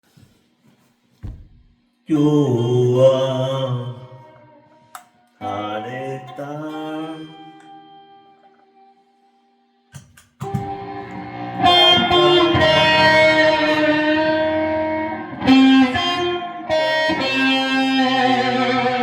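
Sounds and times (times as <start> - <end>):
electric guitar notes and chords: 9.9 - 19.0.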